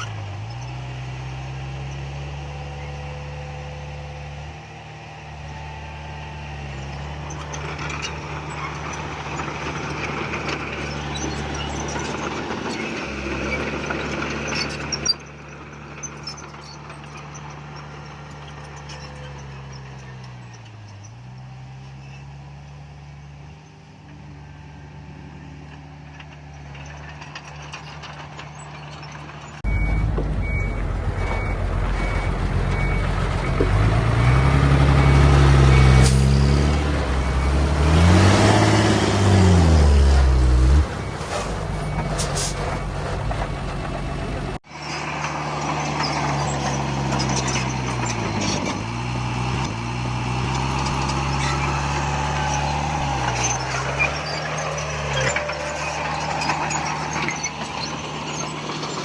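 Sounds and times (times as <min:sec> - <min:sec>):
diesel engine revving: 0:00.0 - 0:59.0
reversing alarm beeping: 0:29.6 - 0:36.6, 0:37.2 - 0:38.2.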